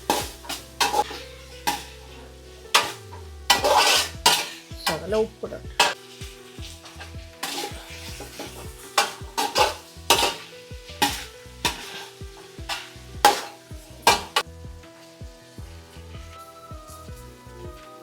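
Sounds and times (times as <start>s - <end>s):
utensil scraping cooking vessel: 0.0s - 5.1s, 5.8s - 14.4s
background music with bass beat: 0.0s - 18.0s.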